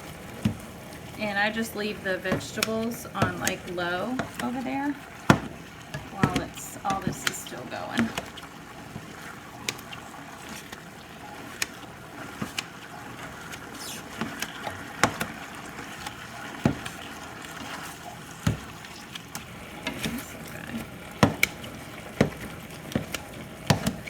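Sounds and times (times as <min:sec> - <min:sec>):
meat chopper knocking on pan: 0:01.9 - 0:09.9, 0:14.1 - 0:17.1, 0:18.4 - 0:18.8, 0:19.7 - 0:24.0.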